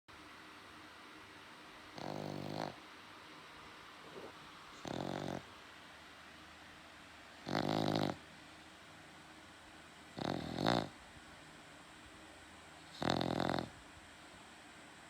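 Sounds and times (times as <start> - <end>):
dog snoring loudly: 1.9 - 2.8, 4.0 - 5.5, 7.4 - 8.2, 10.1 - 11.0, 12.9 - 13.8.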